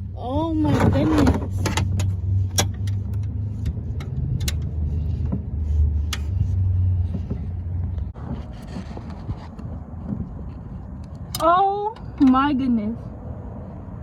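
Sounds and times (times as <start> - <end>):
low vehicle rumble: 0.0 - 14.0
wrench clicking and knocking: 1.4 - 5.5.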